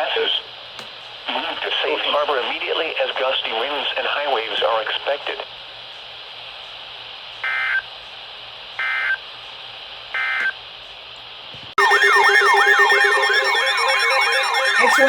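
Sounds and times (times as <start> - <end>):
buzzy digital data bursts: 11.8 - 15.0
warbling siren-like alarm tone: 11.8 - 15.0.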